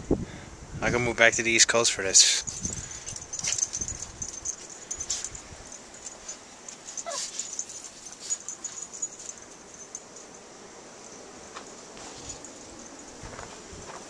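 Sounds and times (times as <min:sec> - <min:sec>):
dog whimpering: 0:07.0 - 0:07.5.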